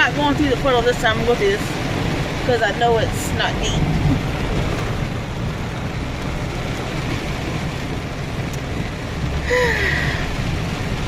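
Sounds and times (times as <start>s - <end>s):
car engine and tyres rumbling: 0.0s - 11.0s.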